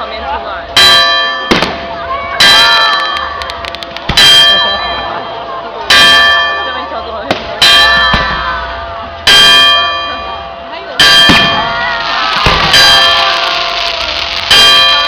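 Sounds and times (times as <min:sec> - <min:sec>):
large bell clanging: 0:00.1 - 0:15.0.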